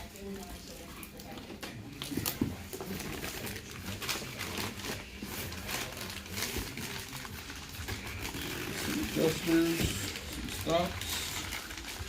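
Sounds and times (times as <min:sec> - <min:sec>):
cardboard rustling and scraping: 0:07.9 - 0:11.9.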